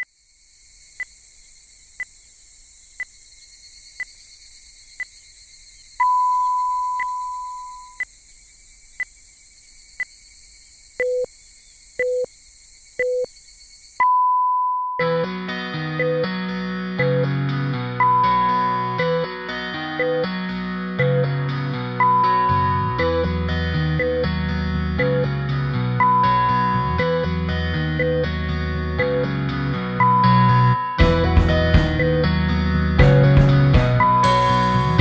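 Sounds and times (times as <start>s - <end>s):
steady hiss: 0.0s - 6.0s
short ticks: 6.9s - 7.2s
guitar music: 15.0s - 35.0s.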